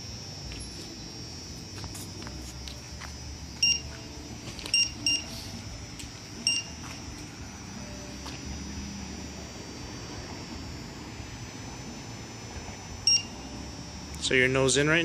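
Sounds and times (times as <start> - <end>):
faint high whine: 0.0 - 15.0
short high-pitched electronic beeps: 3.6 - 4.0, 4.6 - 5.5, 6.4 - 6.8, 13.0 - 13.4.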